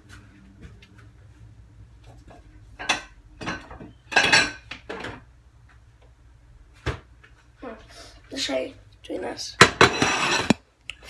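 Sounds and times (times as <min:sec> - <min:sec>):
dishware clinking and knocking: 0:02.8 - 0:05.2, 0:09.6 - 0:10.6.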